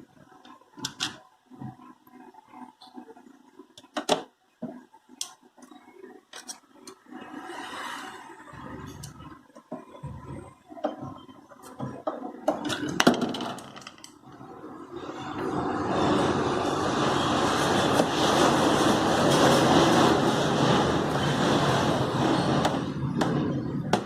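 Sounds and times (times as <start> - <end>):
clicks and rustling of handling parts: 6.3 - 7.0.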